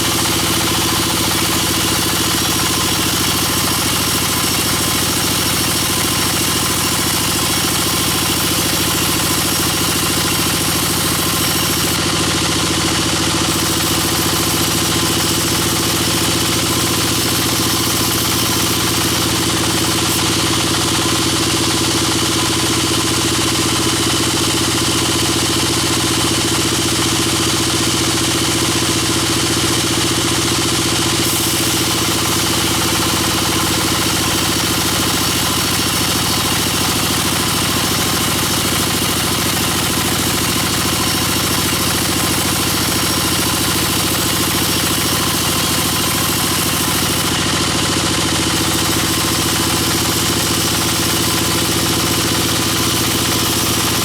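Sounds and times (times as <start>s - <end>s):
bandsaw machinery droning: 0.0s - 54.0s.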